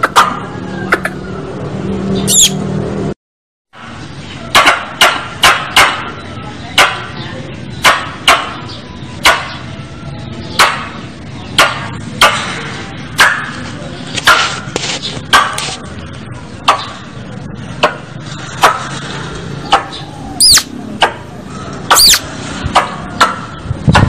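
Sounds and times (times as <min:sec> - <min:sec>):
squirrel calls: 0:02.2 - 0:02.6, 0:19.7 - 0:20.8, 0:21.9 - 0:22.3.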